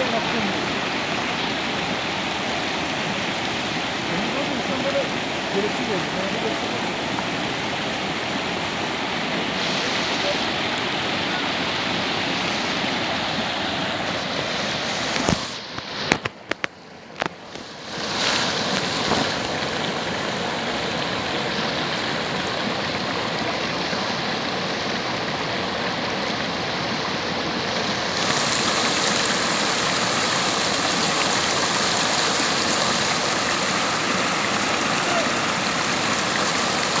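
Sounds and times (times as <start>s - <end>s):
water rushing over waterfall: 0.0s - 37.0s.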